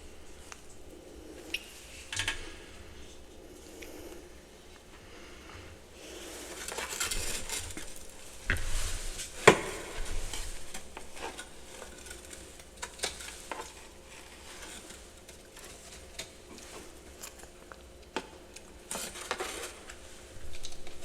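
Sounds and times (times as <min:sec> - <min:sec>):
ice crunching and scraping: 0:06.1 - 0:17.8, 0:18.9 - 0:20.8.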